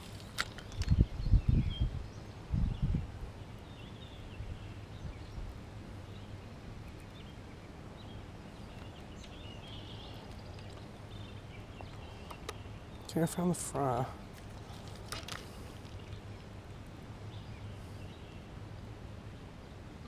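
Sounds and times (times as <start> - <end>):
bird chirps: 6.0 - 13.4.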